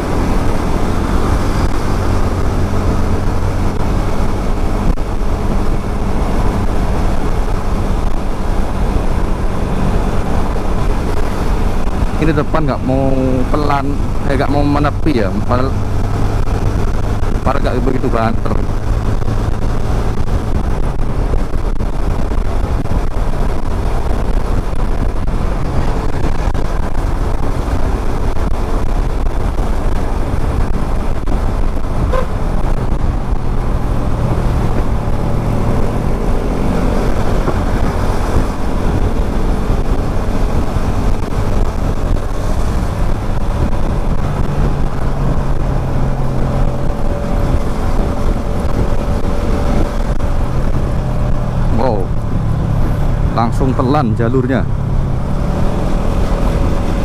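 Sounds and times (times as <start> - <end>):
motorcycle engine running: 0.0 - 57.0
vehicles passing: 0.0 - 57.0
wind rumble on microphone: 0.0 - 57.0.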